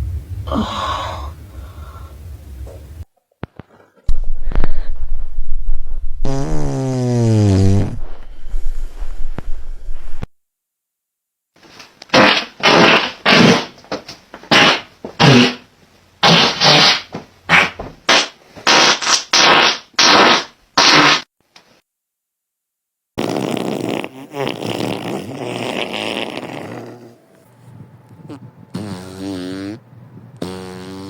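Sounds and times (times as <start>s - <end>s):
farts: 6.2s - 8.2s, 12.1s - 13.8s, 14.5s - 21.3s, 23.2s - 27.4s, 28.3s - 29.8s, 30.4s - 31.0s.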